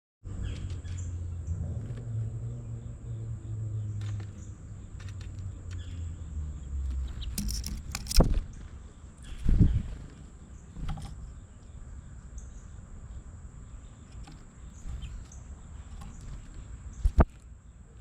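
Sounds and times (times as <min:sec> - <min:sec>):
songbirds chirping: 0:00.2 - 0:18.0
clicks: 0:06.9 - 0:08.4.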